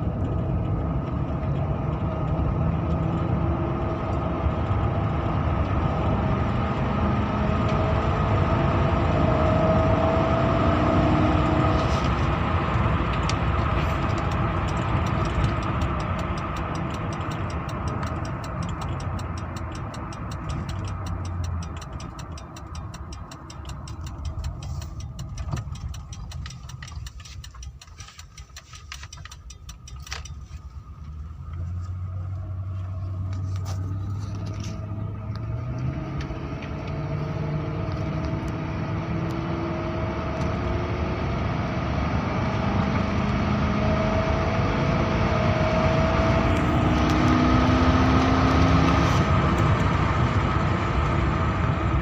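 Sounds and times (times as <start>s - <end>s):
car engine revving: 0.0s - 52.0s
rapid regular ticking: 13.3s - 31.1s.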